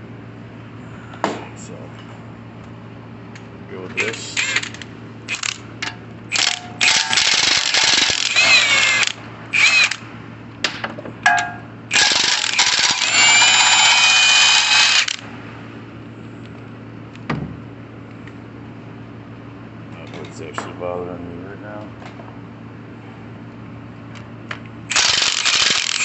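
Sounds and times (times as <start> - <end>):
power tool motor whirring: 6.3 - 10.0, 11.9 - 15.2, 24.9 - 26.0.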